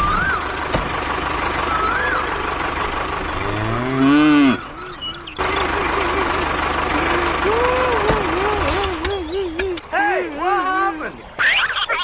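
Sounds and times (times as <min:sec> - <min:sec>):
steady background hum: 0:00.0 - 0:12.0
cow mooing: 0:00.9 - 0:08.8.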